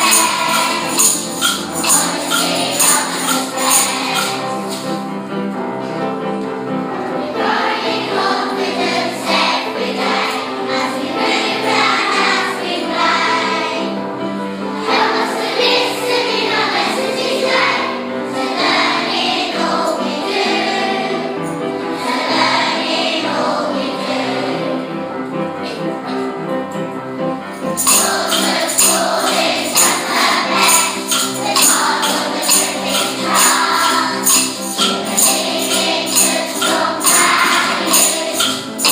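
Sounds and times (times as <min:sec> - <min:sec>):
jingling percussion beat: 0:00.0 - 0:05.0, 0:27.5 - 0:38.9.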